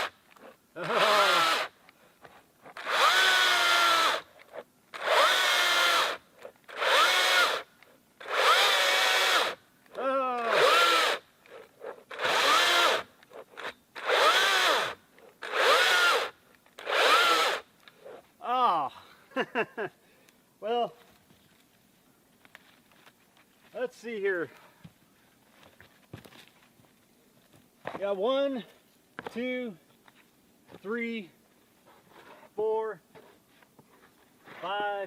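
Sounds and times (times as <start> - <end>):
electric chainsaw motor bursts: 0.8 - 1.7, 2.7 - 9.6, 10.4 - 18.2.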